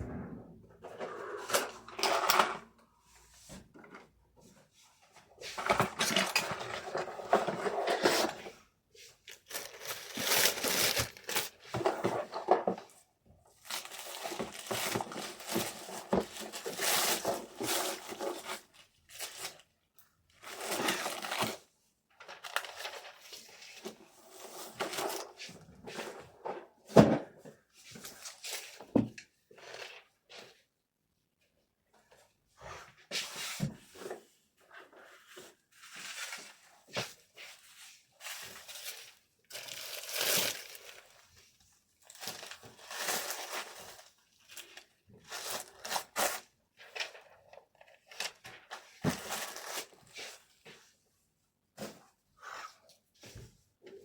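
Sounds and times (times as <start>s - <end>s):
packaging rustling and crinkling: 9.2s - 12.6s, 13.6s - 19.6s, 35.4s - 41.4s, 42.0s - 50.5s.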